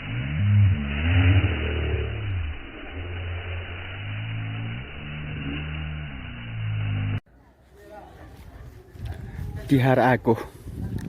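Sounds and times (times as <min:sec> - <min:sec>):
engine revving: 0:00.0 - 0:07.2.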